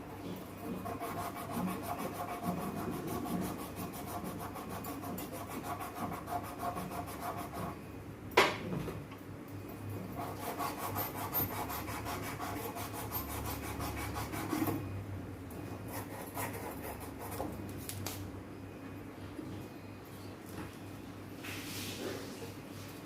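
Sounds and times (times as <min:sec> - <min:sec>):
fine rubbing or scraping: 0:21.4 - 0:23.0.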